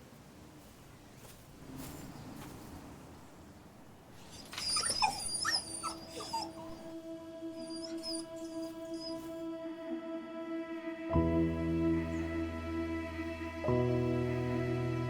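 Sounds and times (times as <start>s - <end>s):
puppy whimpering: 4.2s - 6.9s, 7.6s - 9.3s.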